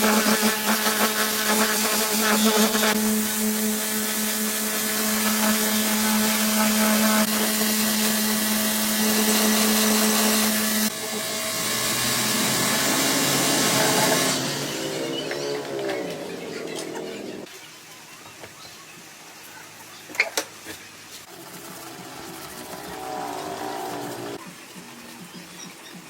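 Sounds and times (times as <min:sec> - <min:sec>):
power tool motor humming: 0:00.0 - 0:17.5, 0:21.3 - 0:24.4.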